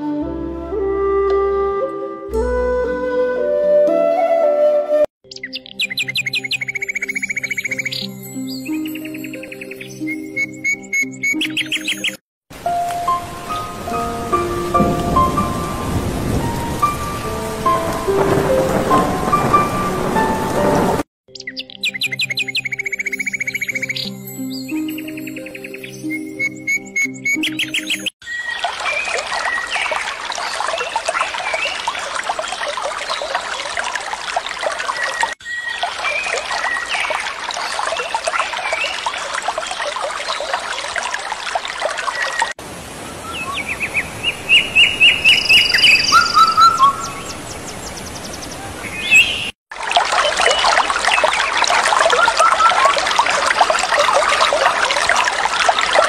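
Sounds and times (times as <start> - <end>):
bird trill: 5.3 - 12.2, 21.3 - 29.8, 35.4 - 37.1, 43.2 - 49.5
birds chirping: 5.3 - 12.2, 21.3 - 32.0, 43.1 - 49.6.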